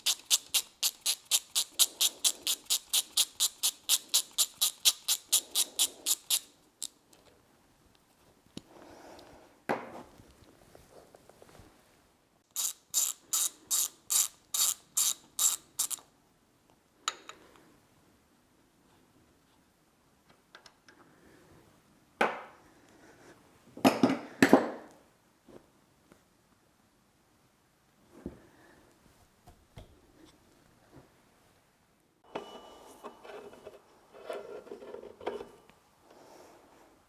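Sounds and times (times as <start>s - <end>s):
ratchet wrench clicking: 0.0s - 6.5s, 12.5s - 16.0s.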